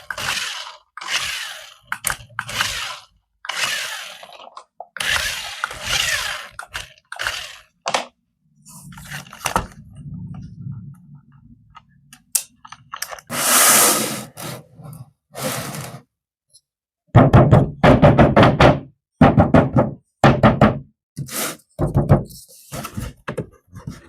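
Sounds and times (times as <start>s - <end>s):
thuds and knocks: 17.1s - 20.9s, 21.8s - 22.3s.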